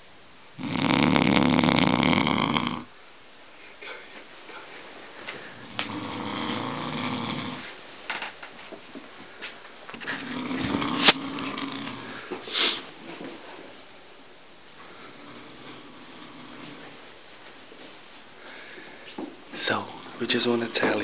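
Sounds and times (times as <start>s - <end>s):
man snoring heavily: 0.6s - 2.9s, 5.6s - 7.6s, 10.3s - 12.2s
loud burst of breath: 12.4s - 12.9s.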